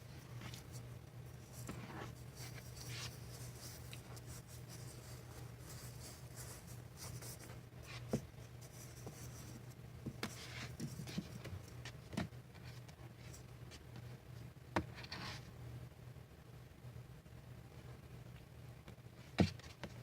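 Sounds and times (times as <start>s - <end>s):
low steady hum: 0.0s - 20.0s
scratchy rustling: 0.2s - 11.5s.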